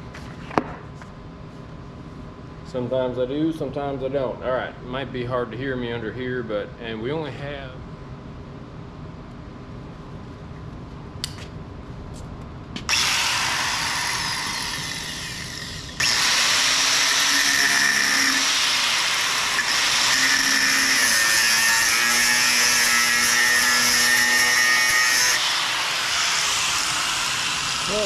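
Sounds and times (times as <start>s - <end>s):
angle grinder cutting metal: 12.9s - 28.0s.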